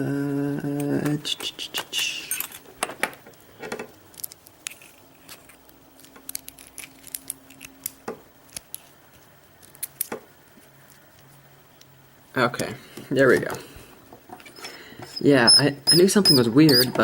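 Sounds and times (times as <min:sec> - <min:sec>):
lock picks clicking and scraping: 0:02.3 - 0:03.1, 0:04.1 - 0:08.9.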